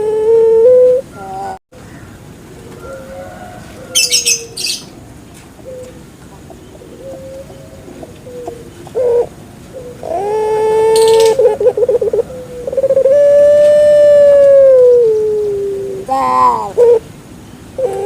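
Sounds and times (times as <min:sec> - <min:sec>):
dove cooing and trilling: 0:00.0 - 0:05.0, 0:05.6 - 0:17.1, 0:17.8 - 0:18.0.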